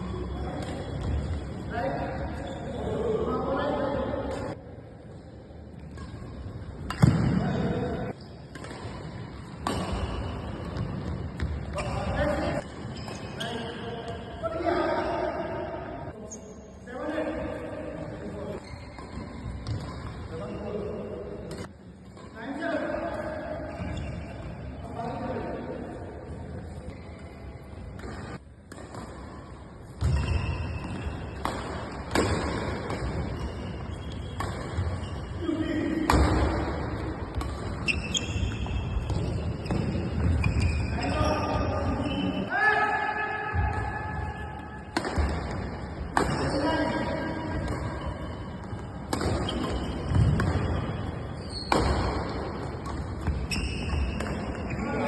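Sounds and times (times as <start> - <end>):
echoing hall noise: 0.0 - 18.6, 27.4 - 55.0
racket striking shuttlecock: 30.0 - 33.5, 48.6 - 50.8.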